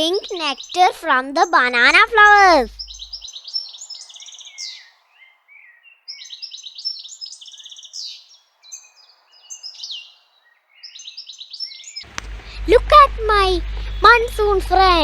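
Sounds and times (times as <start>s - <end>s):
small birds chirping: 0.0s - 15.0s
faint steady hiss: 12.0s - 15.0s.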